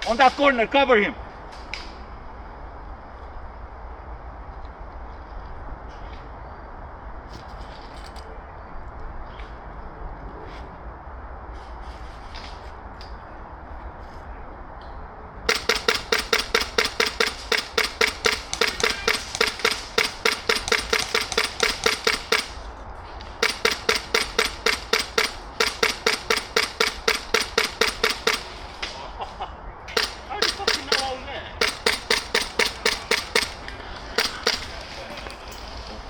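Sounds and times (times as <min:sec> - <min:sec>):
airsoft gun rapid firing: 0:15.5 - 0:22.7, 0:23.4 - 0:28.6, 0:29.9 - 0:35.0.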